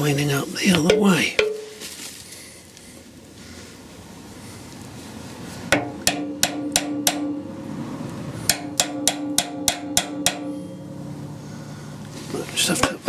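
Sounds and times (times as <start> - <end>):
hammer tapping on metal: 0.7 - 1.9, 5.7 - 7.8, 8.5 - 11.4.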